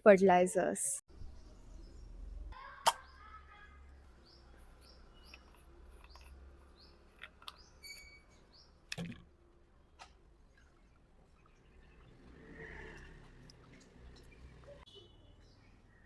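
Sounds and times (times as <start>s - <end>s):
small bird chirping: 4.0s - 8.8s.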